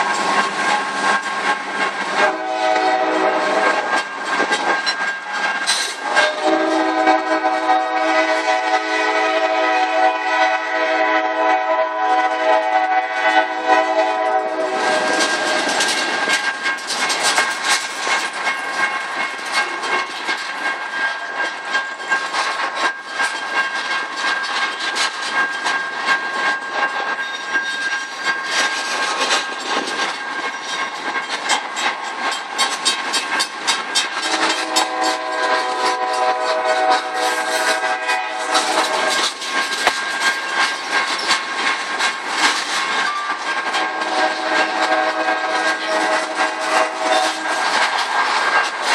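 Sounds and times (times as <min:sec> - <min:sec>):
train wheels clicking over rail joints: 0:00.0 - 0:48.9
locomotive horn chord: 0:02.2 - 0:03.8, 0:06.1 - 0:14.9, 0:34.3 - 0:39.2, 0:43.8 - 0:47.6.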